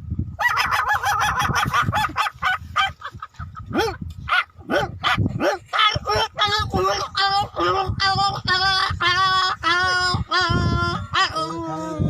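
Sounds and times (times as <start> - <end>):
person imitating puppy yelps: 0.4 - 2.9, 3.7 - 12.0
person imitating puppy whine: 5.8 - 12.0.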